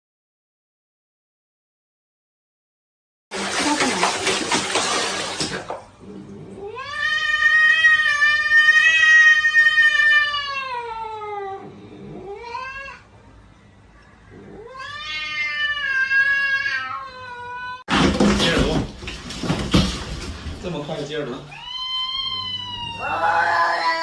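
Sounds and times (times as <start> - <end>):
cat yowling: 6.6 - 13.1, 14.3 - 17.8, 21.5 - 24.0.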